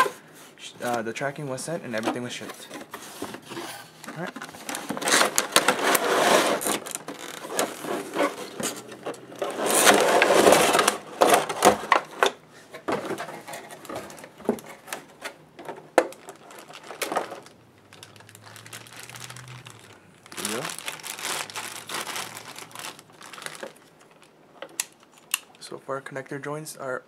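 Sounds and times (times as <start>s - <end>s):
wrapping rustling: 1.9s - 12.3s, 16.0s - 25.4s.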